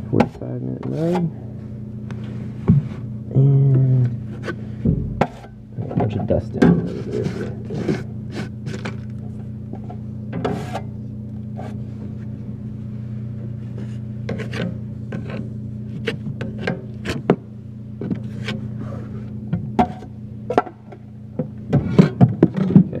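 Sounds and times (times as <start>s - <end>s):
steady low hum: 0.0s - 23.0s
tool scraping joint compound: 5.2s - 5.5s, 10.4s - 10.9s, 13.8s - 17.2s.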